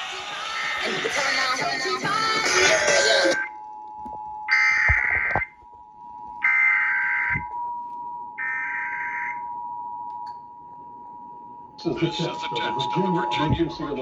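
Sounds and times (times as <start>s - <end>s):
two-tone attention signal: 11.8s - 14.0s.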